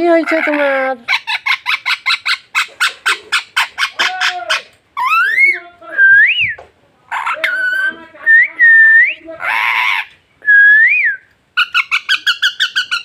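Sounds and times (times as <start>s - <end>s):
parrot chattering: 0.0s - 5.6s, 7.1s - 8.3s, 9.4s - 10.2s, 11.6s - 13.0s.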